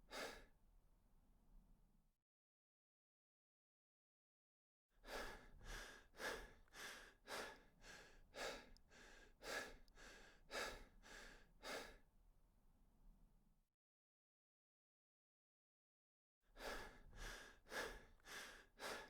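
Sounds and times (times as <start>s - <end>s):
person breathing quickly: 0.1s - 0.5s, 5.0s - 12.0s, 16.6s - 19.0s.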